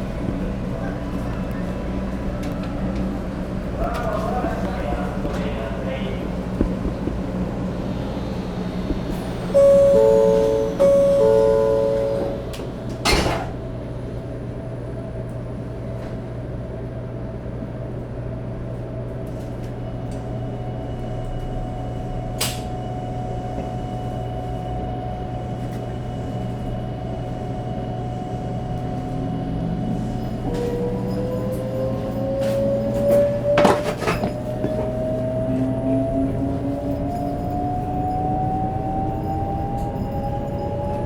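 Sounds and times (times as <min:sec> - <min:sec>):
train equipment hum and whine: 0:00.0 - 0:41.0
chime of tones: 0:09.5 - 0:12.7
sharp clunk: 0:13.0 - 0:13.6.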